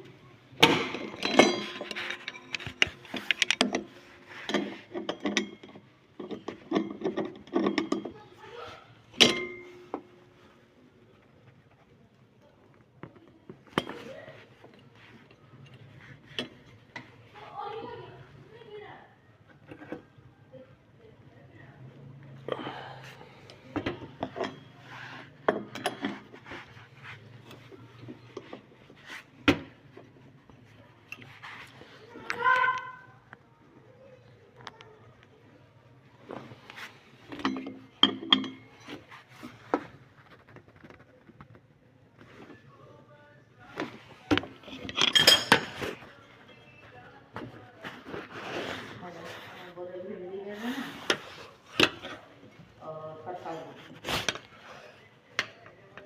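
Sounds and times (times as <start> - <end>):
hard objects knocking and scraping: 0.6 - 8.3, 22.6 - 32.7, 36.2 - 42.6
soft clatter of small objects: 23.3 - 49.8.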